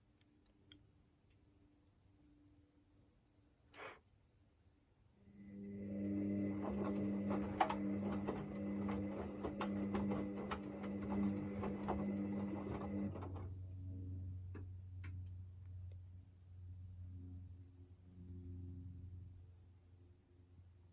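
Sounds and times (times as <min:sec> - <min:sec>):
washing machine humming: 0:05.3 - 0:13.6.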